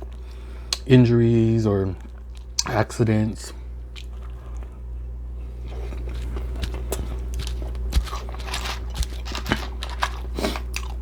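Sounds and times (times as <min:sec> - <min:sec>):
low steady hum: 0:00.0 - 0:11.0
person biting and chewing food: 0:03.8 - 0:11.0.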